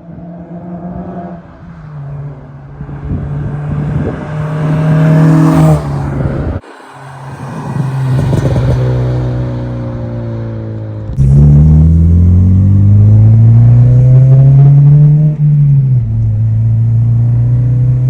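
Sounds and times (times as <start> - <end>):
car exhaust accelerating: 11.1 - 18.0.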